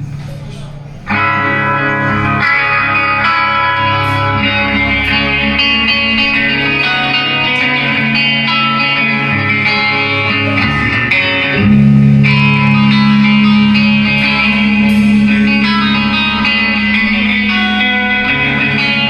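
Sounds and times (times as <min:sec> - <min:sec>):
electric guitar chords: 0:01.0 - 0:19.0.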